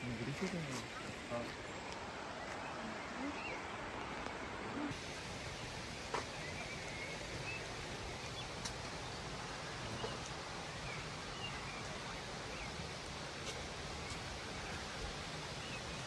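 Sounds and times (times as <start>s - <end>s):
waterfall rushing: 4.4s - 16.0s.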